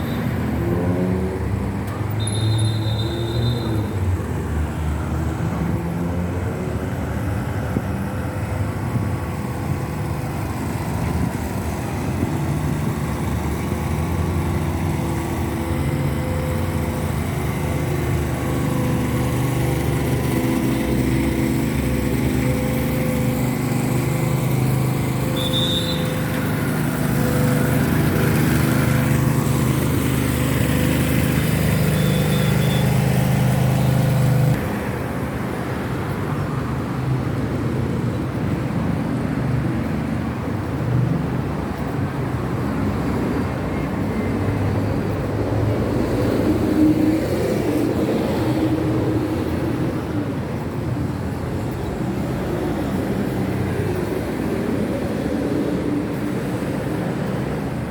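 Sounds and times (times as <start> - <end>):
engine humming: 0.0 - 38.4.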